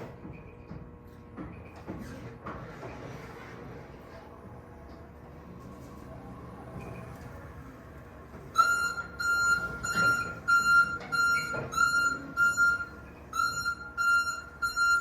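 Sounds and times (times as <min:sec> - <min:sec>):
truck warning beeper: 0:08.6 - 0:15.0.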